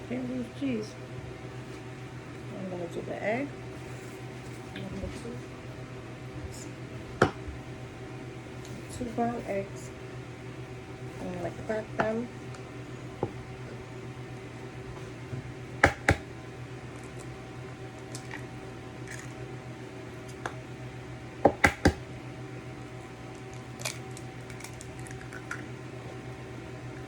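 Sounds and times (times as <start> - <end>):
steady low hum: 0.0 - 27.0
eggs cracking against an edge: 23.3 - 25.7.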